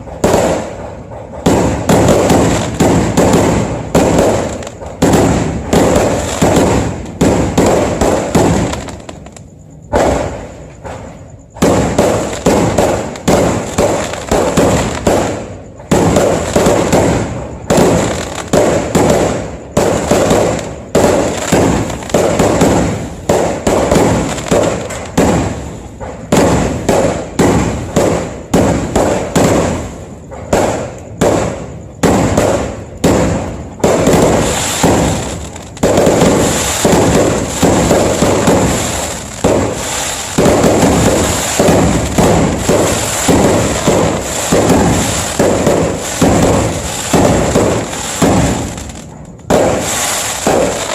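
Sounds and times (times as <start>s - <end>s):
fireworks banging: 0.0s - 50.9s.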